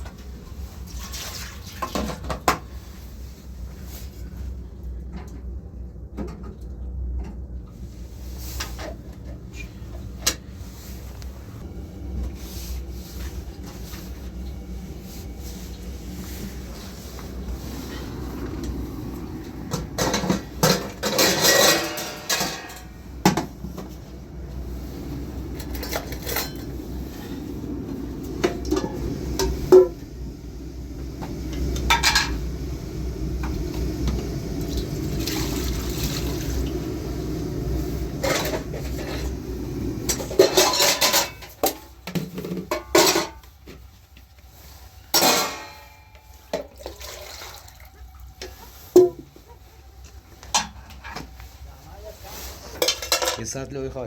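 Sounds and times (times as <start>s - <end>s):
low rumble: 9.3s - 21.4s, 22.2s - 40.6s.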